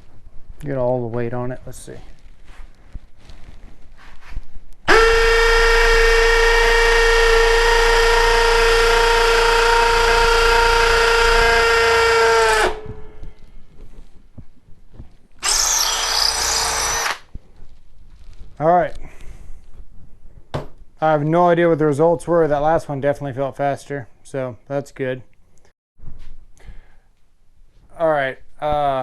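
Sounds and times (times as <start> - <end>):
hammer drill boring into concrete: 4.9 - 12.8, 15.4 - 17.3.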